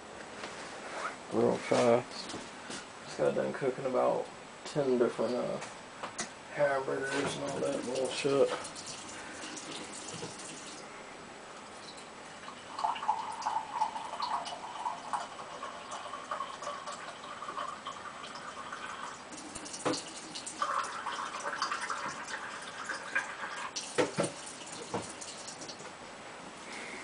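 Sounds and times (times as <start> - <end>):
tap water running into cup: 7.2 - 10.8, 12.4 - 25.9.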